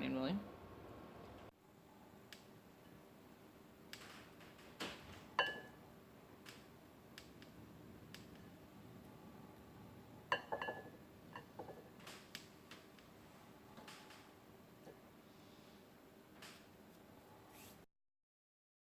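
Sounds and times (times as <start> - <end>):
tableware clinking: 5.3 - 5.8, 10.3 - 11.9.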